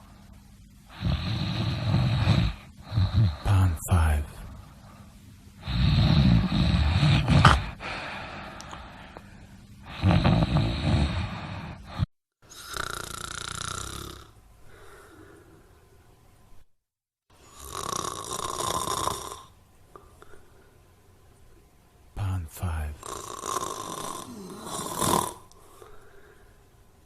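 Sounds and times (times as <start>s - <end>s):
loud snoring: 0.9s - 3.7s, 5.6s - 7.8s, 9.8s - 14.4s, 17.4s - 19.6s, 23.0s - 25.6s.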